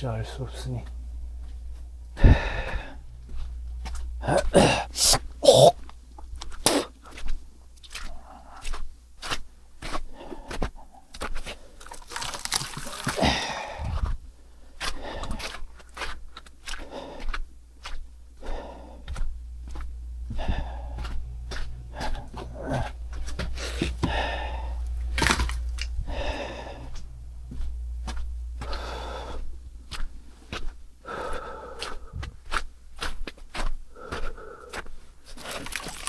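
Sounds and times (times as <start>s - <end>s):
steady low hum: 0.0s - 9.8s, 11.6s - 33.2s
crunching and knocking: 11.6s - 13.8s, 19.4s - 28.9s, 35.3s - 36.0s.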